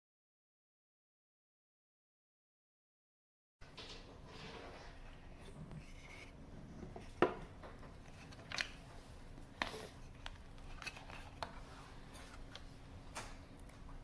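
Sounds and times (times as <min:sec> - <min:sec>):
faint steady hum: 0:03.6 - 0:14.0.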